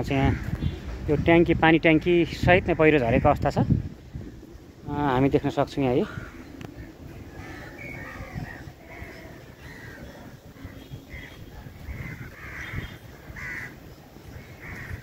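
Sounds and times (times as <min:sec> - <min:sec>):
bird calling: 0:05.5 - 0:15.0.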